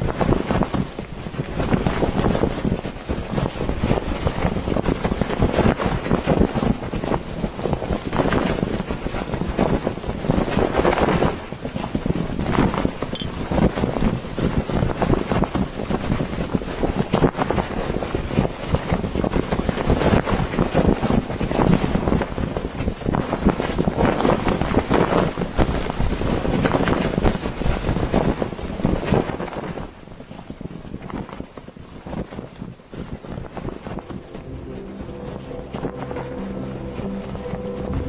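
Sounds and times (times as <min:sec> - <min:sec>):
gusty wind buffeting microphone: 0:25.5 - 0:28.6.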